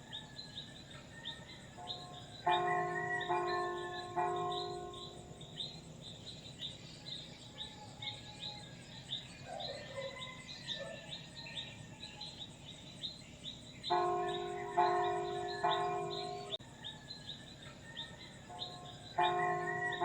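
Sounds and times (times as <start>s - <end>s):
church bell ringing: 1.8s - 6.2s, 13.8s - 16.6s, 18.5s - 20.0s.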